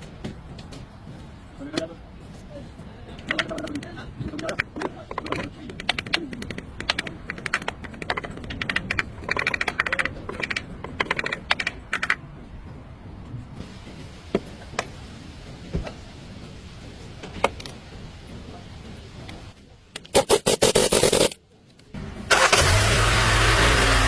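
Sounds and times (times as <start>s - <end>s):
sharp clicks and taps: 3.2s - 12.3s.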